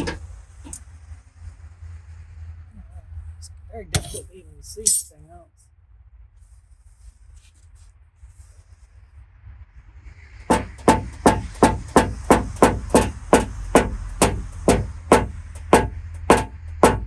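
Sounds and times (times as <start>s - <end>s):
hammer tapping on sheet metal: 10.5s - 17.0s.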